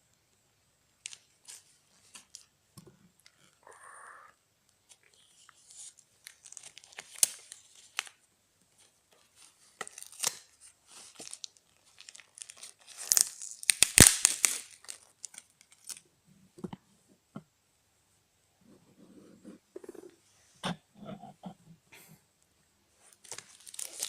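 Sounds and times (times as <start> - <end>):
paper and plastic tearing: 23.2 - 24.0.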